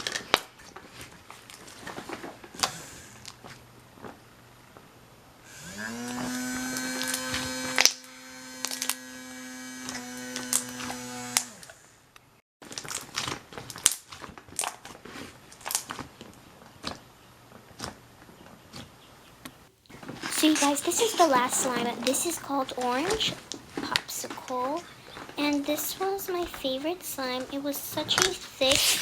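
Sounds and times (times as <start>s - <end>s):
steady buzz: 5.5s - 11.6s.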